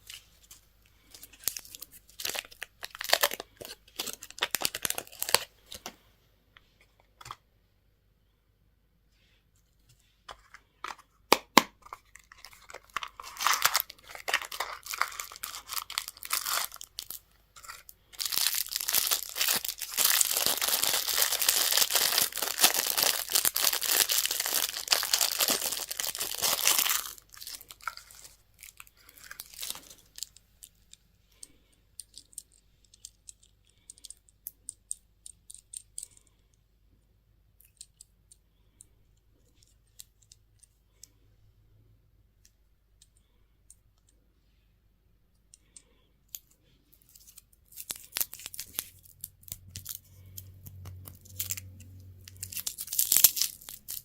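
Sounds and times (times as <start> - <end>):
packaging crinkling and tearing: 0.0 - 5.9, 11.8 - 30.9, 47.1 - 54.0.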